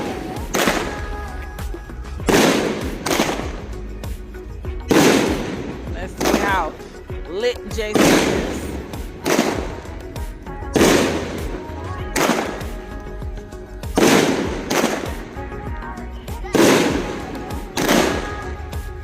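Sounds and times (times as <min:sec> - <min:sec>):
firework booms with echo: 0:00.0 - 0:01.3, 0:02.2 - 0:04.2, 0:04.8 - 0:07.0, 0:07.7 - 0:13.0, 0:13.8 - 0:15.9, 0:16.5 - 0:18.6
firework crackling: 0:00.0 - 0:19.0.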